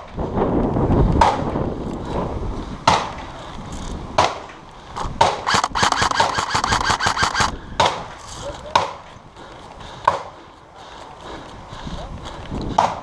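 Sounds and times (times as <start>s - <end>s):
airsoft gun firing: 5.2s - 8.0s.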